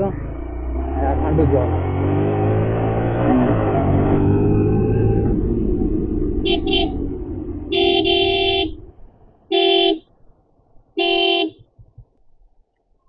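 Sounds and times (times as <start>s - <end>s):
low engine rumble: 3.8s - 11.0s
vehicle horn honking: 6.4s - 8.9s, 9.5s - 10.1s, 11.0s - 11.7s.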